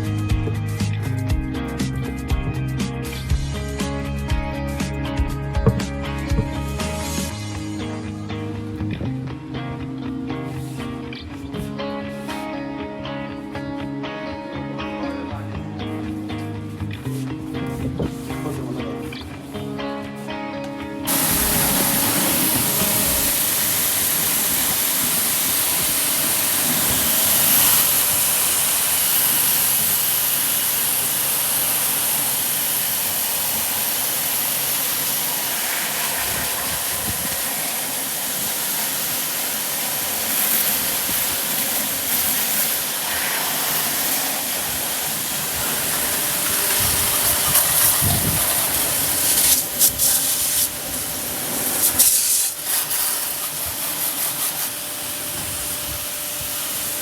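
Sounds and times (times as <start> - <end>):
pump motor running: 0.0 - 7.8, 21.1 - 57.0
high-pressure water jet hissing: 0.0 - 8.0, 21.1 - 57.0.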